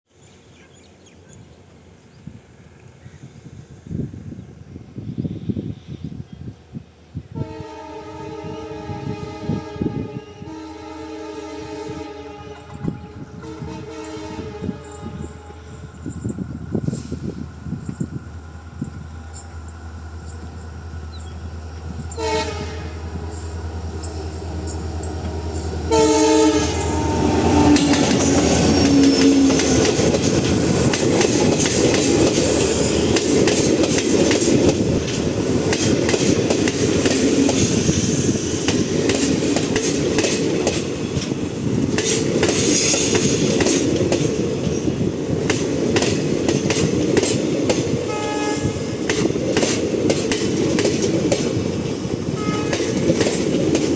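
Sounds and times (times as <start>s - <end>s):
locomotive horn blasts: 7.4s - 15.9s, 22.1s - 29.9s, 48.1s - 49.0s, 52.3s - 53.0s
train wheels clattering over rails: 26.7s - 53.9s.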